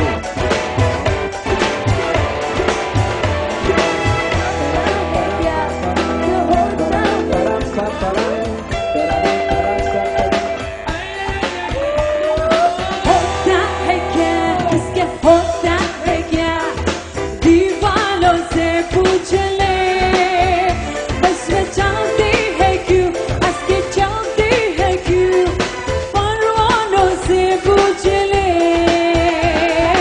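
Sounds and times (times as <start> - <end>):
drum beat: 0.0 - 19.4
live band playing: 0.0 - 30.0
person singing: 3.6 - 25.6, 26.2 - 30.0.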